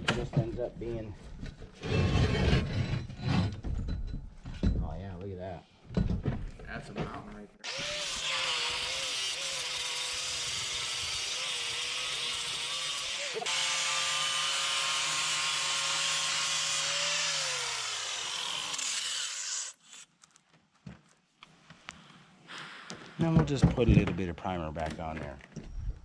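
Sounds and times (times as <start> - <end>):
angle grinder grinding mortar: 7.6 - 20.1.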